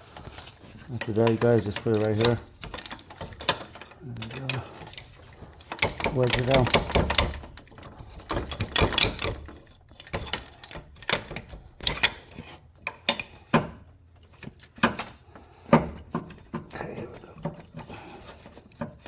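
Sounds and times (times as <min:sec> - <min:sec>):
pry bar clanking on metal: 0:00.9 - 0:13.7.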